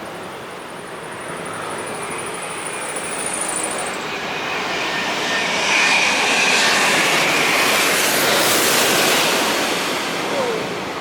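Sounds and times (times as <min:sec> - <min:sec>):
faint engine whine: 0:00.0 - 0:11.0
jet engines roaring on landing: 0:00.0 - 0:11.0.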